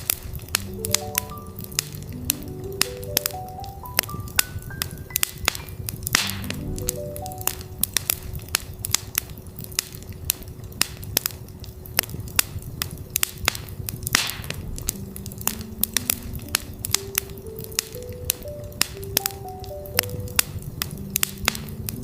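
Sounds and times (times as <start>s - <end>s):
campfire crackling and popping: 0.0s - 22.0s
soft tones rising in pitch: 0.5s - 8.1s, 14.9s - 22.0s.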